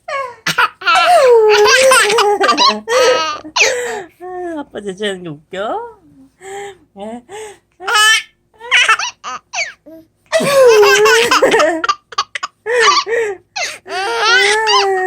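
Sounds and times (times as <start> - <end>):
baby laughing: 0.4 - 3.9, 7.8 - 14.9.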